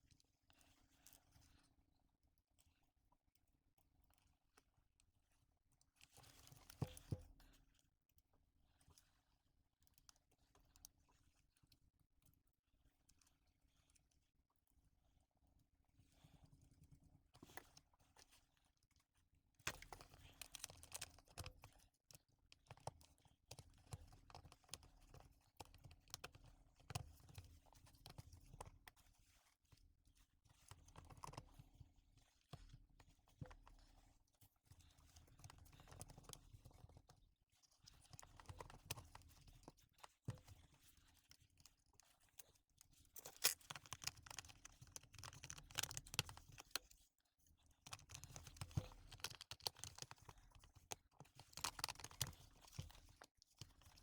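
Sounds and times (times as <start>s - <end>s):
small parts clicking and rustling: 43.0s - 47.0s, 47.9s - 53.2s.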